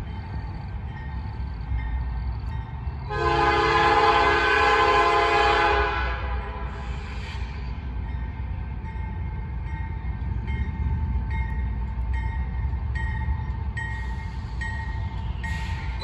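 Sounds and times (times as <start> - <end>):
low locomotive rumble: 0.0 - 16.0
locomotive air horn blast: 3.1 - 7.3.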